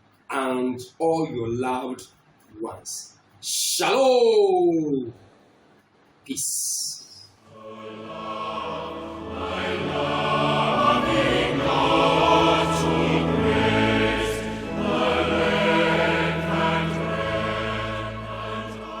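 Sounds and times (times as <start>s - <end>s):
choir singing: 7.5s - 19.0s.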